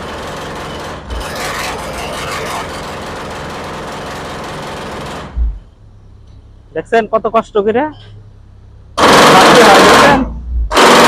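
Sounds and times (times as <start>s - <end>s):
jackhammer hammering concrete: 0.0s - 5.6s, 9.0s - 11.0s
heavy engine running: 0.0s - 11.0s.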